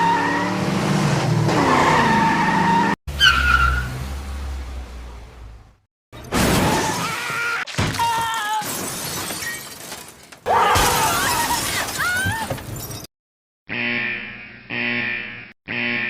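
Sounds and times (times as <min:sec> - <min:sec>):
glass shattering: 0:06.2 - 0:13.1.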